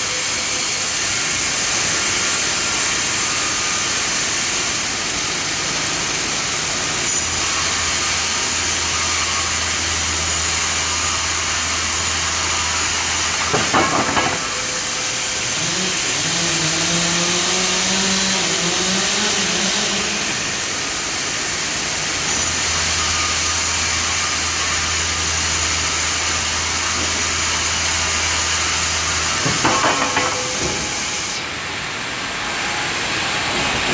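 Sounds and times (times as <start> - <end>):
band saw cutting timber: 0.0 - 33.9
knocks: 13.5 - 14.7, 29.4 - 31.2.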